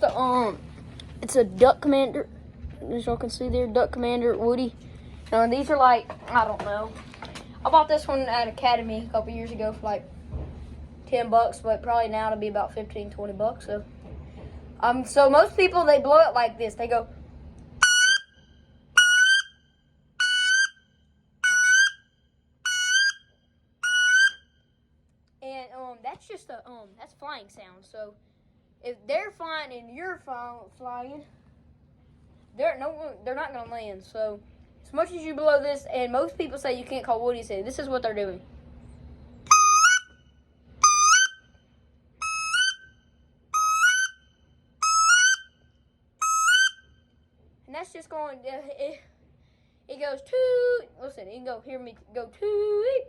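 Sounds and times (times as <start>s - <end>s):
duck call whistled notes: 17.8s - 19.6s, 20.2s - 24.6s, 39.5s - 40.2s, 40.8s - 41.5s, 42.2s - 45.6s, 46.2s - 47.0s.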